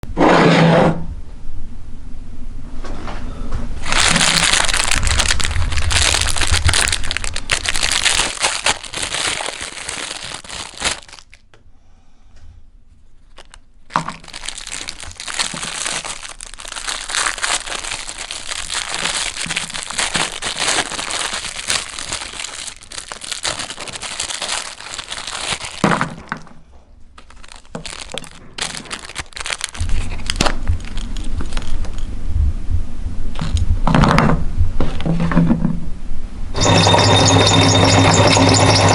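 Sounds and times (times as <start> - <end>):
meat grinder crushing cookies: 3.9 - 10.8, 14.0 - 25.8, 36.6 - 38.9.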